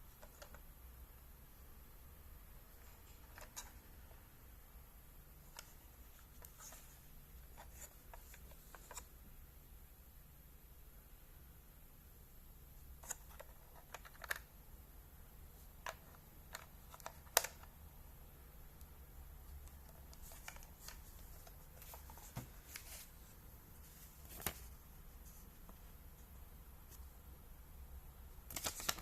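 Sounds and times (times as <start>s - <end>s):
faint low hum: 0.0s - 29.0s
soft rustling: 19.4s - 27.2s.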